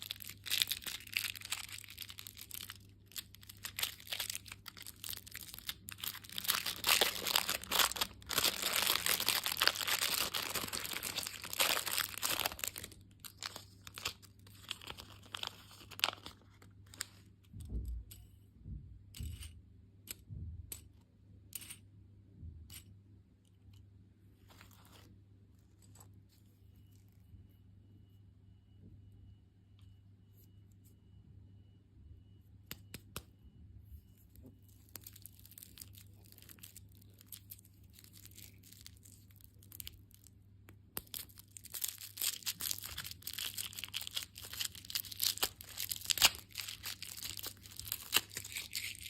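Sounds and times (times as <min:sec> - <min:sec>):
plastic wrappers crinkling: 0:00.0 - 0:17.3, 0:34.7 - 0:40.3, 0:41.0 - 0:49.0.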